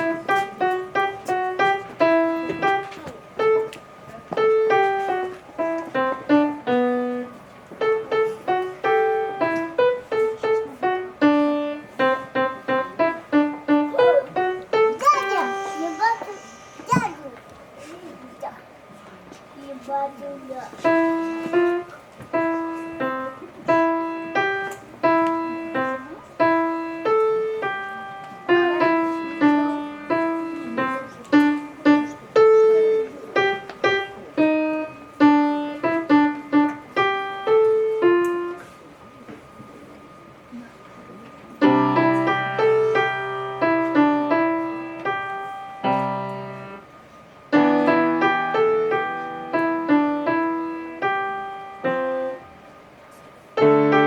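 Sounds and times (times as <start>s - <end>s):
solo piano piece: 0.0s - 17.0s, 20.7s - 54.0s.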